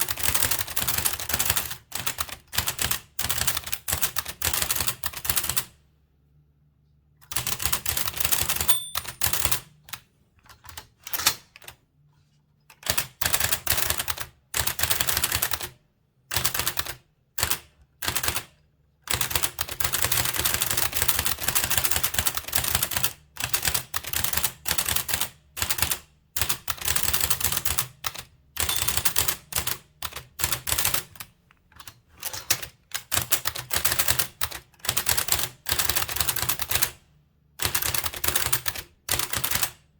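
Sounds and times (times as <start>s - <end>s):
typewriter keys striking: 7.3s - 9.7s, 28.6s - 29.8s.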